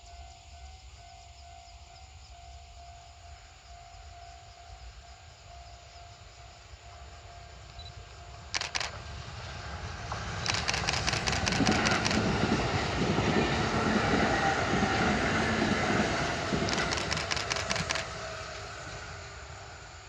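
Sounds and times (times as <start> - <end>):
train wheels rumbling on rail: 4.1 - 20.0
wheel clacks: 10.1 - 18.6.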